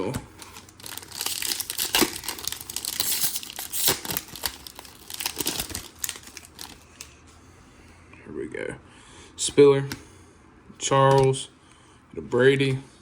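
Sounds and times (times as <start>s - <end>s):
foil wrapper crinkling and tearing: 0.4s - 7.1s.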